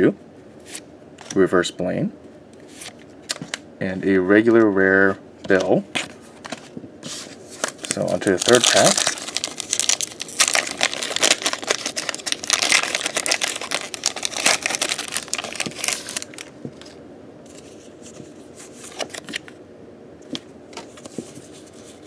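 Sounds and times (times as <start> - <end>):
foil wrapper crinkling: 7.6 - 17.0
cards clicking and rustling: 7.6 - 18.2.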